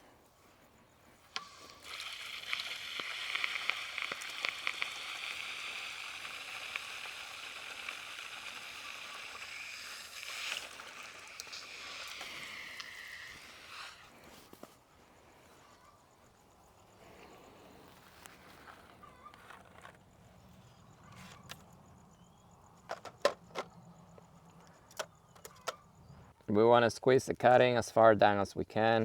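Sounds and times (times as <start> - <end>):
water running in a stream: 1.3 - 14.2.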